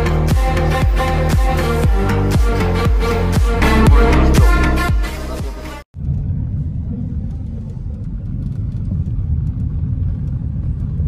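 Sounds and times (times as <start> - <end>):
electronic dance music: 0.0 - 5.9.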